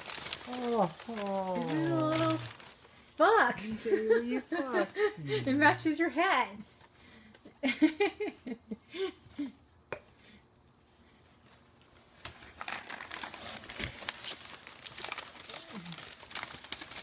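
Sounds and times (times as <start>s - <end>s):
gift wrap rustling: 0.0s - 3.8s, 11.5s - 17.0s.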